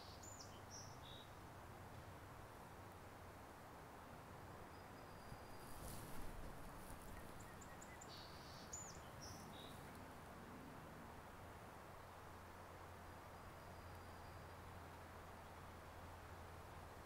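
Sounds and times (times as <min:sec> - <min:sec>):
rustle: 0:00.0 - 0:17.0
steady low hiss: 0:00.0 - 0:17.0
bird chirping: 0:07.0 - 0:10.0.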